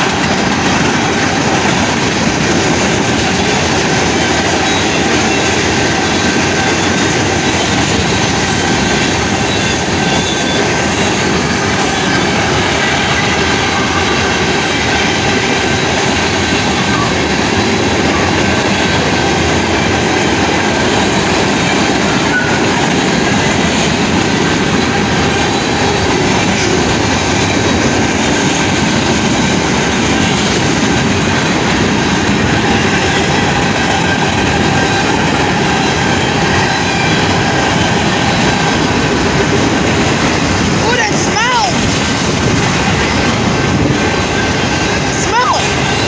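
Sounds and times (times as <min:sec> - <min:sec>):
train wheels rumbling on rails: 0:00.0 - 0:46.0.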